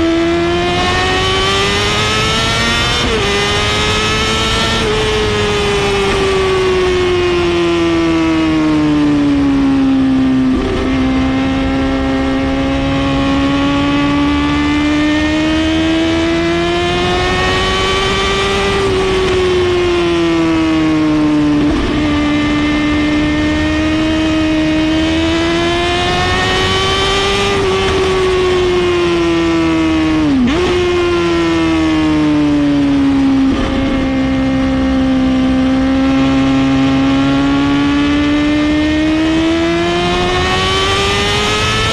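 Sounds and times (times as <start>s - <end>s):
motorcycle engine at high revs: 0.0s - 41.9s.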